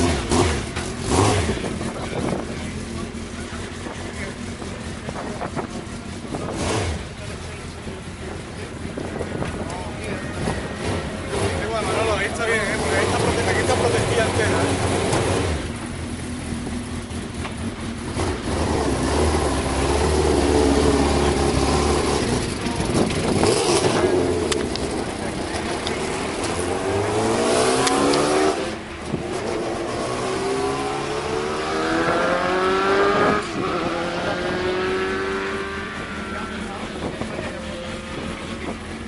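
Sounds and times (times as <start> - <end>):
racing car engine accelerating: 17.0 - 39.0.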